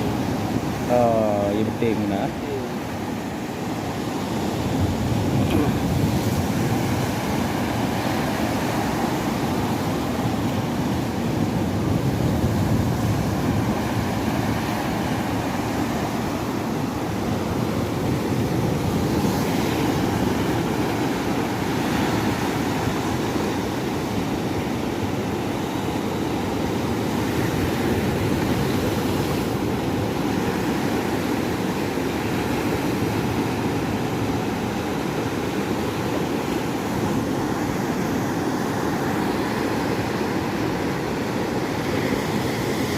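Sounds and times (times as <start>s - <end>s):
waves: 0.0s - 42.9s
wind: 0.0s - 42.9s.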